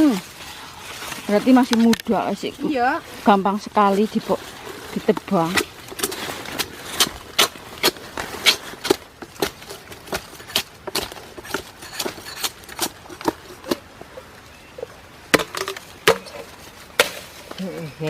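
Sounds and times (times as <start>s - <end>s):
blade chopping bamboo: 5.4s - 13.8s.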